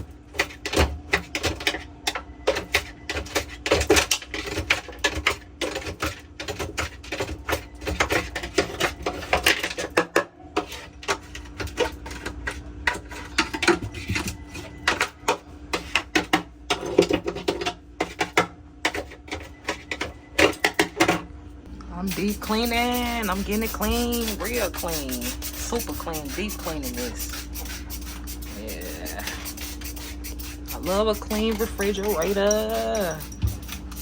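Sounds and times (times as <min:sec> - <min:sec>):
steady hum: 0:00.0 - 0:34.0
hard objects clicking and knocking: 0:00.3 - 0:21.3.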